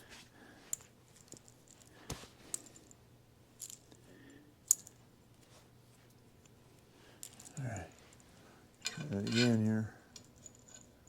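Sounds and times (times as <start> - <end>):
faint steady hum: 0.0 - 11.0
small steel parts clicking: 8.8 - 10.9.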